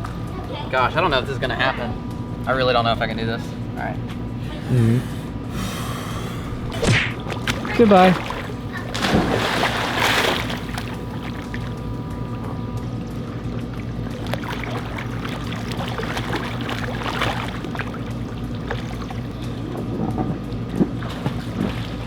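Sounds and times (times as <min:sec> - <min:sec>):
pool water splashing: 0:00.0 - 0:22.0
steady low hum: 0:00.0 - 0:22.0.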